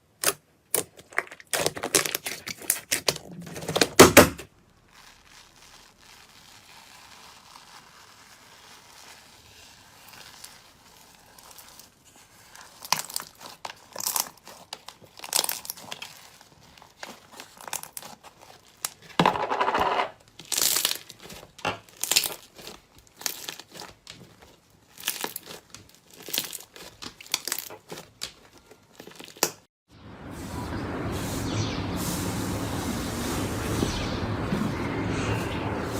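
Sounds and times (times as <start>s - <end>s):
slime crackling and popping: 0.2s - 3.8s, 4.6s - 19.2s, 20.2s - 29.6s.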